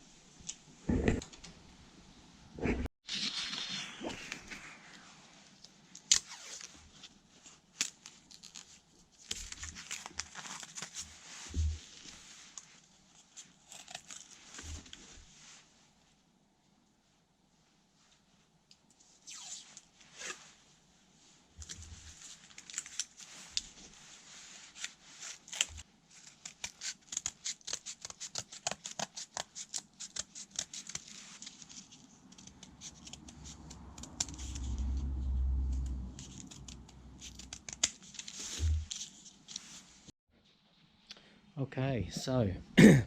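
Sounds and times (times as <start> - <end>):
short low rumble: 33.7 - 37.2.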